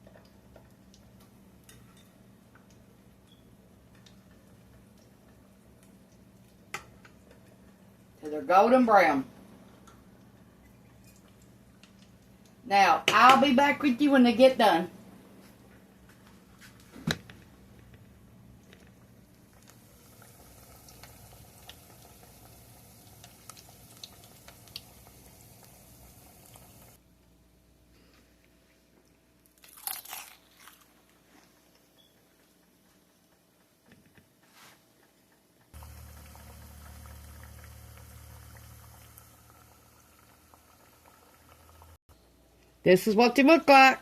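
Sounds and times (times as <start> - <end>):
food sizzling in hot grease: 19.6 - 27.0, 35.8 - 42.0
low hum: 35.8 - 42.6.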